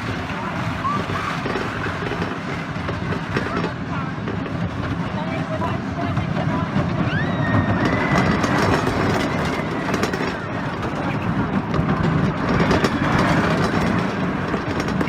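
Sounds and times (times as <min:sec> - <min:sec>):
roller coaster rumbling and clattering: 0:00.0 - 0:15.0.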